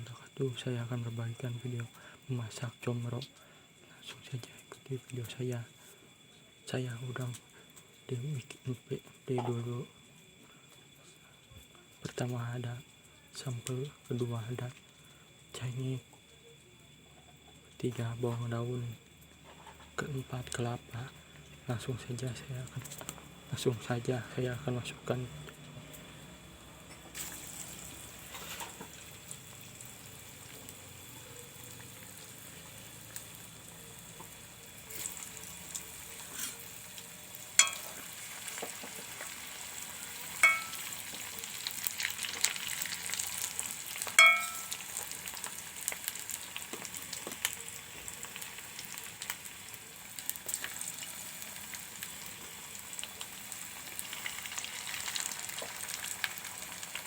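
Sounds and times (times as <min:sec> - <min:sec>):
food stirred in metal pot: 0:36.1 - 0:36.8, 0:37.5 - 0:39.0, 0:40.4 - 0:41.2
spoon clinking pot rim: 0:37.6 - 0:38.0, 0:40.4 - 0:40.9, 0:44.2 - 0:44.9.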